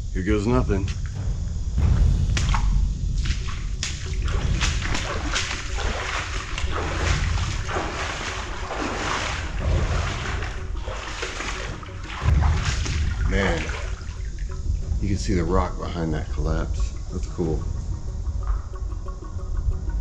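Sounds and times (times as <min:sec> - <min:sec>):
footsteps splashing in shallow water: 0:02.3 - 0:14.6.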